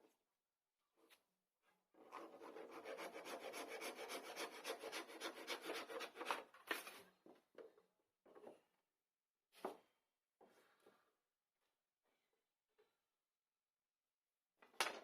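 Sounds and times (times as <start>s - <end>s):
wood being sanded by hand: 2.2s - 6.3s.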